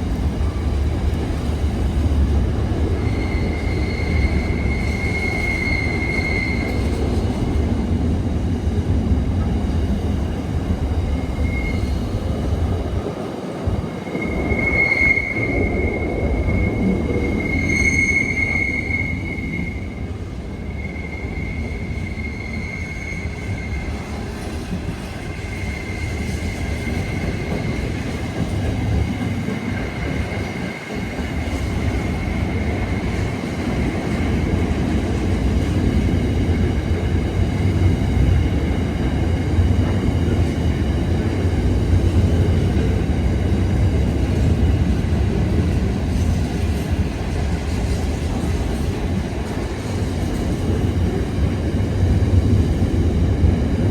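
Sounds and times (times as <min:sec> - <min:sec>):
train wheels rumbling on rails: 0:00.0 - 0:53.9
high-pitched wheel squeal: 0:03.0 - 0:07.0, 0:11.2 - 0:12.3, 0:14.0 - 0:24.2.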